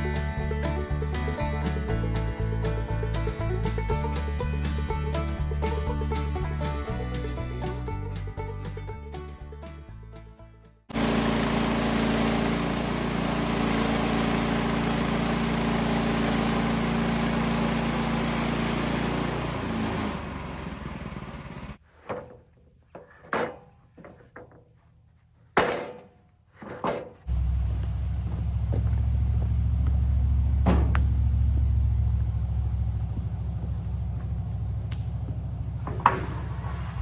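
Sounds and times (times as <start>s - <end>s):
sawmill gas engine running: 0.0s - 10.2s, 10.9s - 21.8s, 27.3s - 37.0s
engine starting up: 10.9s - 21.8s, 27.3s - 37.0s
sharp clunks: 22.0s - 24.7s, 25.6s - 27.3s, 28.7s - 31.7s, 35.8s - 37.0s.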